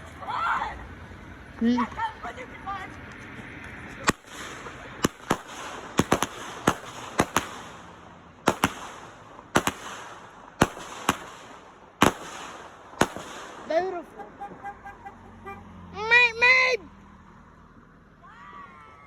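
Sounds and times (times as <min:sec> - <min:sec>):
fireworks bangs: 0:03.8 - 0:14.9.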